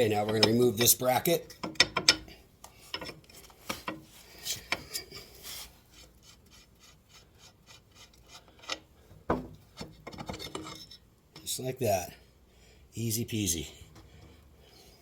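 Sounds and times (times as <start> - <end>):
light metal clicks and rubbing: 0.0 - 5.3.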